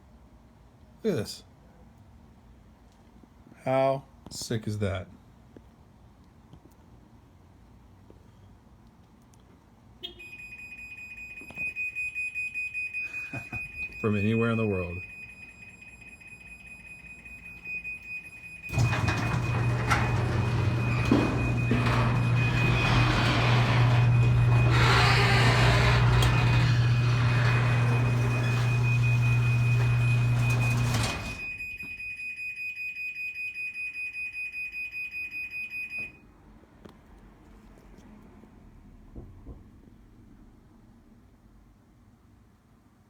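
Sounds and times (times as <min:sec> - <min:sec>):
garage door opener motor humming: 0:18.6 - 0:31.6.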